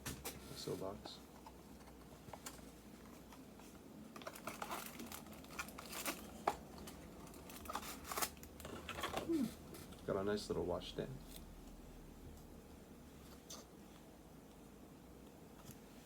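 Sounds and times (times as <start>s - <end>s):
packaging crinkling and rustling: 1.4s - 10.0s.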